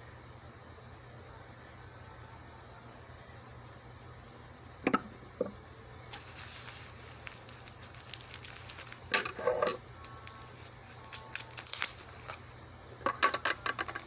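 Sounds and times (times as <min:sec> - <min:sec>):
packaging crinkling and clicking: 0:06.1 - 0:12.5, 0:13.1 - 0:14.0.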